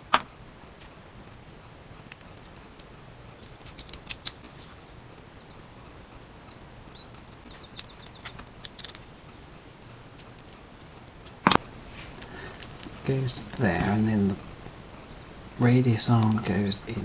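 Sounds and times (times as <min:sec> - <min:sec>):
small plastic parts clicking and tapping: 0:02.1 - 0:05.3, 0:06.5 - 0:09.0
bird chirping and trilling: 0:02.2 - 0:09.6, 0:12.6 - 0:17.0.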